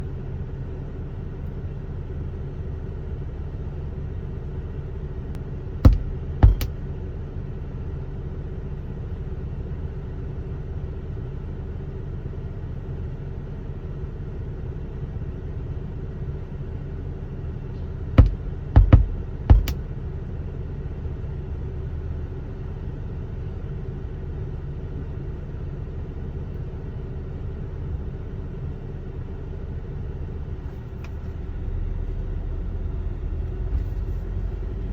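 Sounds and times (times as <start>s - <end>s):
low hum in car cabin: 0.0s - 34.9s
loud booms from car speakers: 5.8s - 6.8s, 18.2s - 19.8s.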